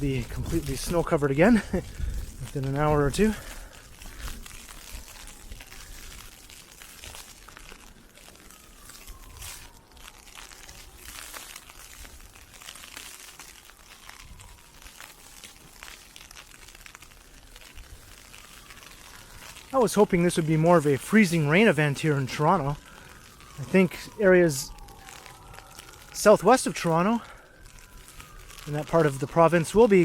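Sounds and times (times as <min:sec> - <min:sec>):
footsteps crunching in snow: 0:00.0 - 0:16.8
ice pellets pattering on umbrella: 0:00.0 - 0:30.0.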